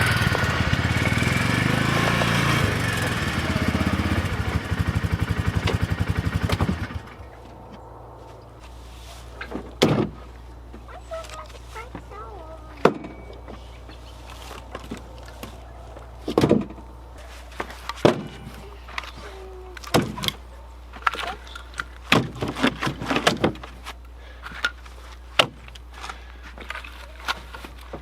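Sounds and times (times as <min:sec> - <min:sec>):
steady low hum: 0:00.0 - 0:28.0
knocks and clunks: 0:09.3 - 0:23.9.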